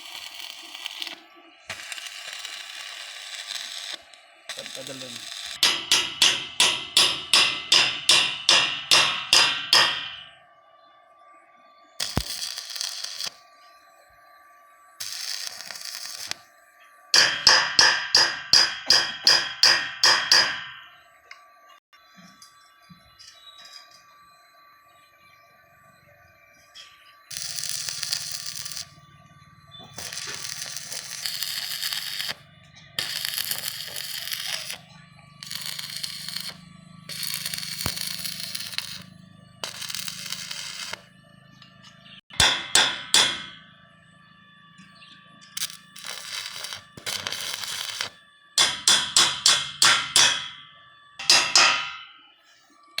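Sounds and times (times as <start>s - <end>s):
welding arc crackling hiss: 0.0s - 7.9s, 12.0s - 13.4s, 15.0s - 16.4s, 27.3s - 28.9s, 29.9s - 32.4s, 33.0s - 34.8s, 35.4s - 41.1s, 45.6s - 50.4s
hammer striking metal: 5.6s - 10.3s, 17.2s - 20.9s, 42.3s - 43.7s, 45.5s - 52.2s.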